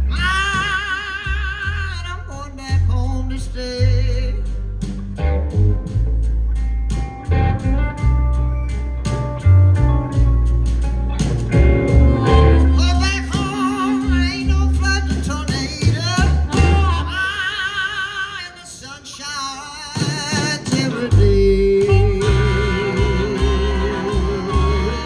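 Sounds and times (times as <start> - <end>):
live blues band playing: 0.0 - 17.9, 20.0 - 25.0
lead guitar bent notes: 7.1 - 17.2, 21.0 - 25.0.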